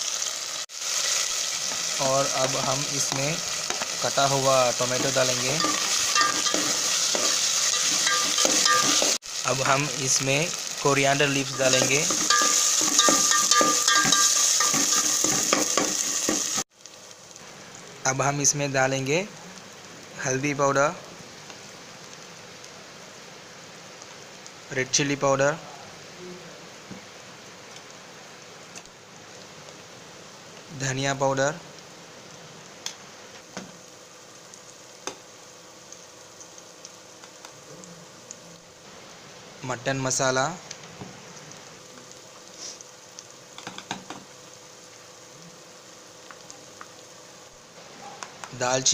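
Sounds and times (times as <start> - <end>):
food sizzling in oil: 0.0 - 48.9
spoon knocking against pan: 5.6 - 9.2, 11.8 - 16.6.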